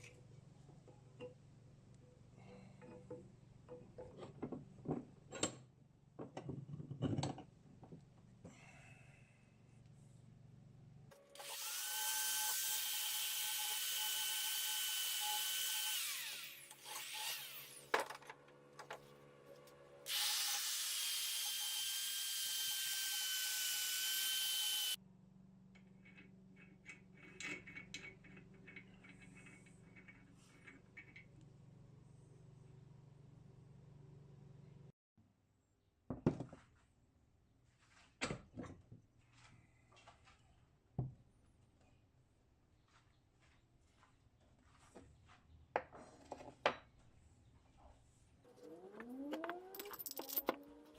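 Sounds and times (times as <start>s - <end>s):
power tool whining: 11.3s - 18.0s, 20.1s - 25.0s.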